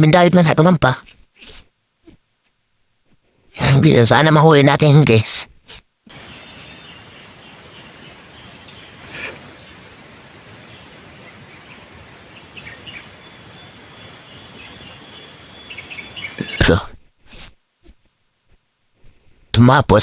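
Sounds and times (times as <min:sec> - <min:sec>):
outdoor background noise: 0:05.8 - 0:19.3.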